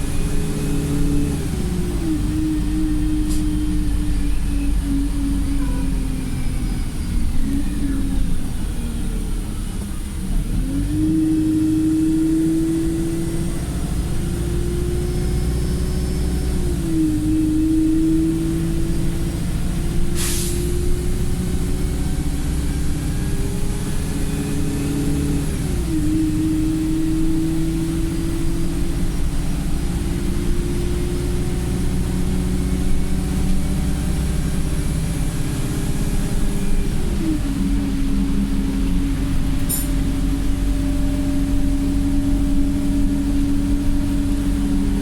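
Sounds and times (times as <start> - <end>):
bus engine drone: 0.0 - 45.0
air hiss: 20.1 - 20.7.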